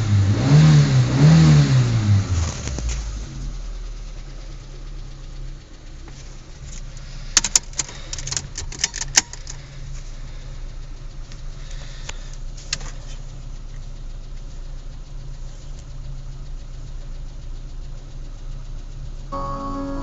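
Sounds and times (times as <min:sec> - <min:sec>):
car engine idling: 0:00.0 - 0:20.0
sharp clicks: 0:07.4 - 0:09.6.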